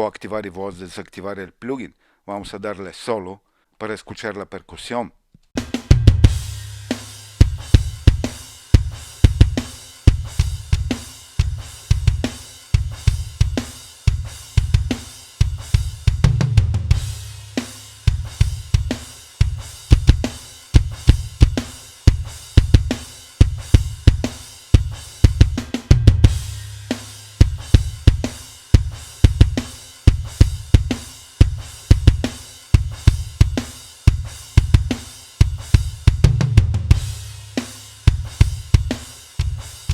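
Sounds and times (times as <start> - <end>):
cymbals: 5.6 - 16.2, 16.9 - 36.1
snare drum: 5.6 - 39.9
kick drum: 5.9 - 6.4, 7.4 - 12.2, 18.2 - 26.4, 27.4 - 28.2, 28.8 - 37.1.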